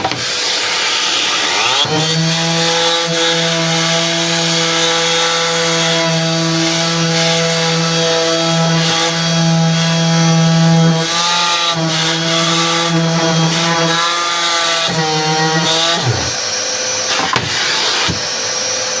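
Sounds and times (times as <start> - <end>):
shop vacuum hissing: 0.0 - 2.4, 3.8 - 19.0
woodworking machine motor: 0.0 - 19.0.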